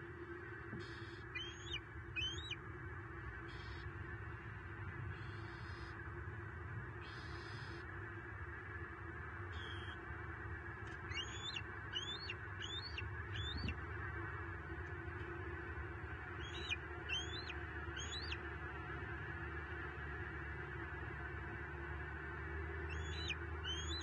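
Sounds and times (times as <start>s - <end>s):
steady outdoor hiss: 0.0s - 24.0s
small bird calling: 0.7s - 2.6s, 3.4s - 3.9s, 5.1s - 6.0s, 7.0s - 7.9s, 9.5s - 10.0s, 11.0s - 13.8s, 16.3s - 18.5s, 22.8s - 24.0s.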